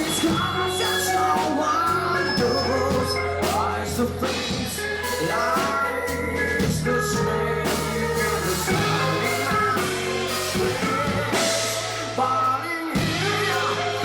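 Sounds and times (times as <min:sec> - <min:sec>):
live rock band playing: 0:00.0 - 0:14.0
man singing: 0:00.0 - 0:14.0.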